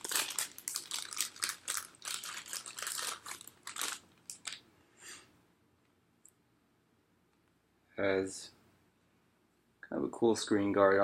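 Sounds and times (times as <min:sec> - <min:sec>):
plastic bag crinkling: 0:00.0 - 0:04.6.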